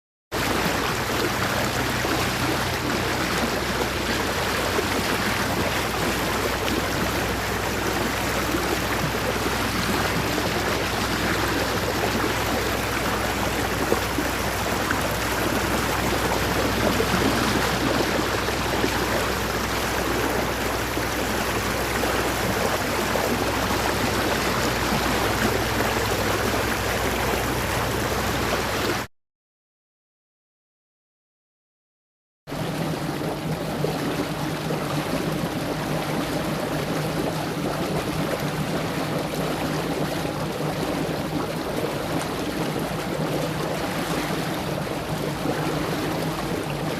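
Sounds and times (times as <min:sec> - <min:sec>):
water splashing along boat hull: 0:00.3 - 0:29.1, 0:32.5 - 0:46.9
steady low hum: 0:00.5 - 0:29.0.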